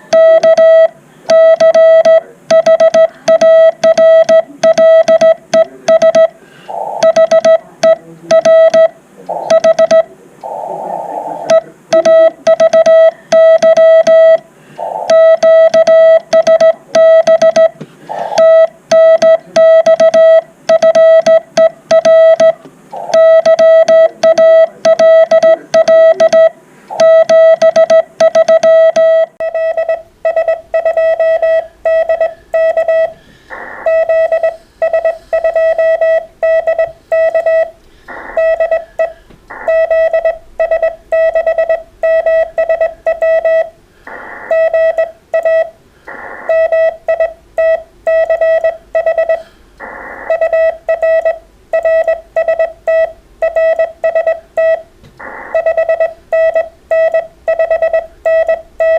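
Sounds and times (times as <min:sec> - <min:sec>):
morse code tone: 0:00.0 - 0:06.4, 0:07.0 - 0:10.1, 0:11.4 - 0:14.4, 0:15.1 - 0:58.9
faint background noise: 0:00.0 - 0:58.9.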